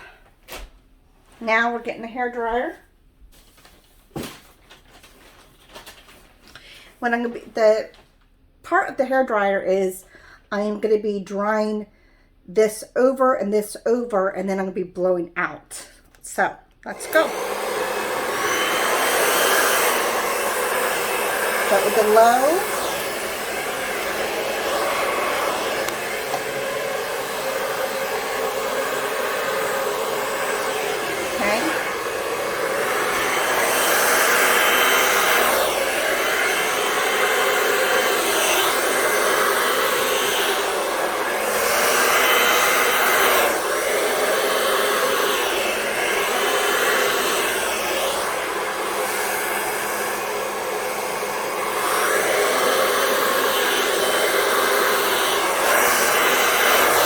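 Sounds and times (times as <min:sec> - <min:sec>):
hair dryer blowing: 0:00.0 - 0:00.2, 0:16.9 - 0:57.0.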